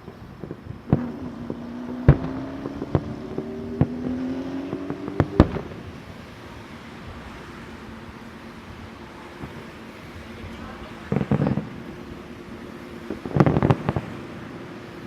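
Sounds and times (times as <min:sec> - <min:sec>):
fireworks bursting: 0:00.0 - 0:15.0.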